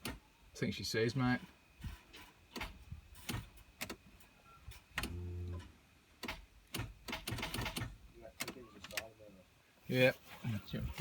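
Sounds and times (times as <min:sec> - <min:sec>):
starter motor clicking: 0:06.2 - 0:08.6.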